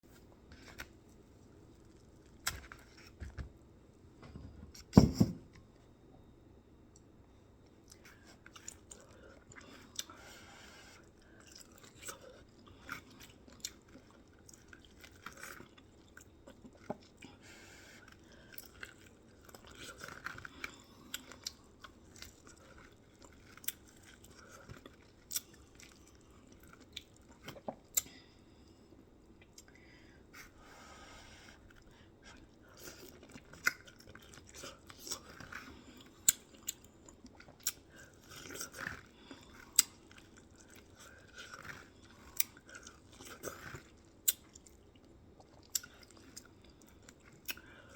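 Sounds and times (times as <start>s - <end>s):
chewing and biting: 7.8s - 10.2s, 11.0s - 17.4s, 18.0s - 28.2s, 31.6s - 47.9s.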